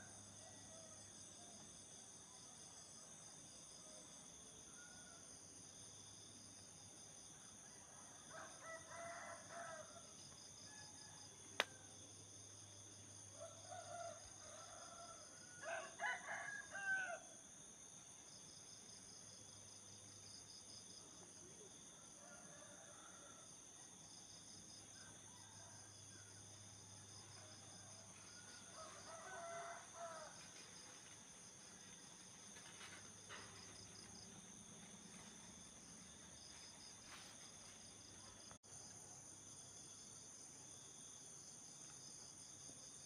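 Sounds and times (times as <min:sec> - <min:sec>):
faint roosters crowing: 0:04.5 - 0:05.8, 0:07.4 - 0:12.0, 0:13.0 - 0:17.4, 0:21.7 - 0:38.6.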